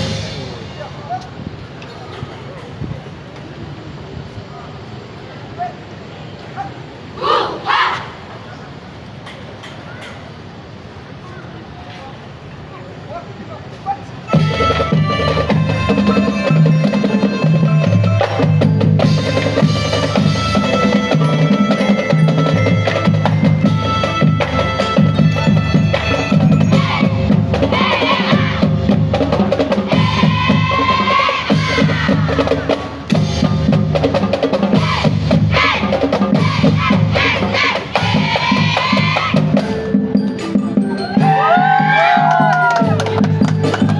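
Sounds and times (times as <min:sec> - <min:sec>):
snare and bass drums: 0:00.0 - 0:01.2, 0:14.4 - 0:39.9
sustained melody instruments: 0:14.3 - 0:28.0, 0:42.8 - 0:43.9.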